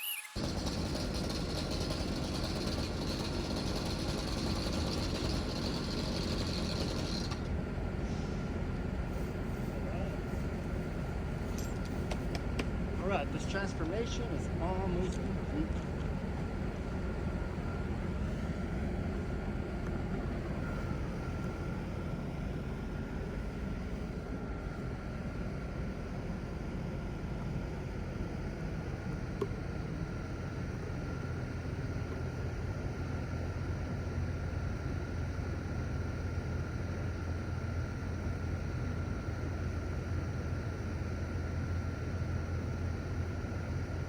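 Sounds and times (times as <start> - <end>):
small petrol engine running: 0.4 - 7.5
high steady whine: 6.7 - 44.0.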